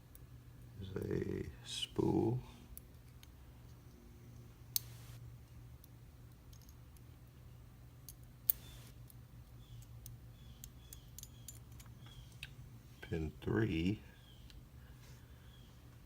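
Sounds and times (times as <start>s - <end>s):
metallic clicks of lock parts: 5.8s - 7.1s, 9.8s - 12.5s.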